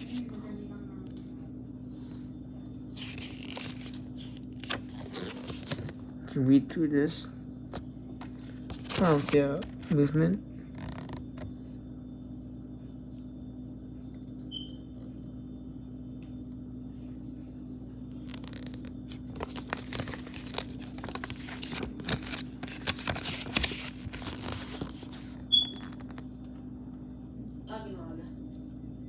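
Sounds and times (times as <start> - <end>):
low background hum: 0.0 - 29.0
packaging crinkling and rustling: 3.0 - 6.1, 8.2 - 10.0, 18.3 - 26.2.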